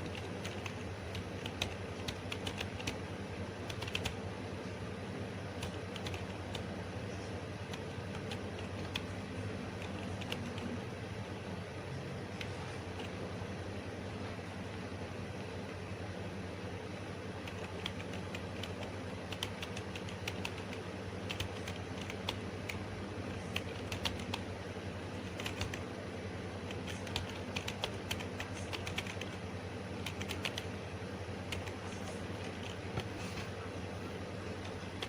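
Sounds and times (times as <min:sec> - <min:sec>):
computer keyboard typing: 0:00.0 - 0:04.2, 0:05.5 - 0:06.7, 0:07.6 - 0:10.8, 0:12.2 - 0:13.2, 0:17.4 - 0:25.9, 0:26.6 - 0:29.4, 0:30.0 - 0:30.8, 0:31.5 - 0:33.1
steady low hum: 0:00.0 - 0:35.0.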